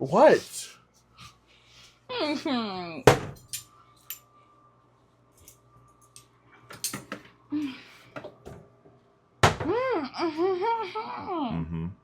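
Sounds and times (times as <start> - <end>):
utensils and dishes clattering: 3.1 - 4.2, 5.4 - 7.2.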